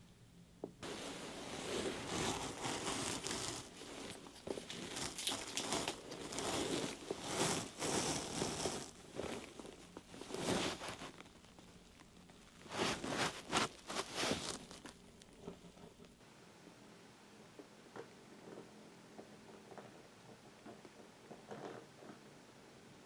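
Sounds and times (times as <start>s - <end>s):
clothing rustling and crinkling: 0.8s - 16.2s.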